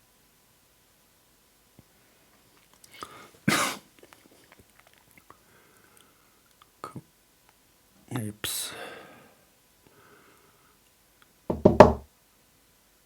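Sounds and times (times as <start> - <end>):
person coughing: 3.5 - 3.8.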